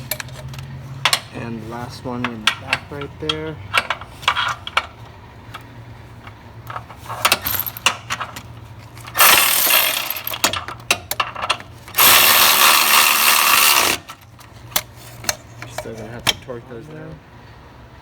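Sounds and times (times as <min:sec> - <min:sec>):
power tool running bolt: 0:06.7 - 0:15.4.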